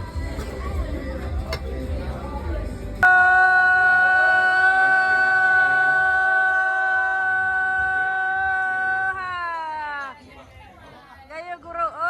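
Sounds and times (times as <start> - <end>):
long steady note: 3.0 - 9.2.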